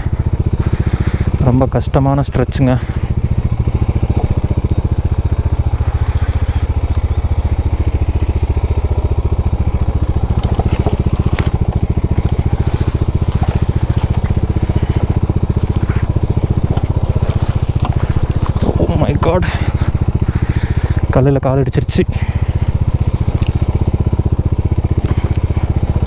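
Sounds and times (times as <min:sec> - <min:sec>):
motorcycle engine at low revs: 0:00.0 - 0:26.0
tyres crunching on loose rock: 0:02.4 - 0:21.1.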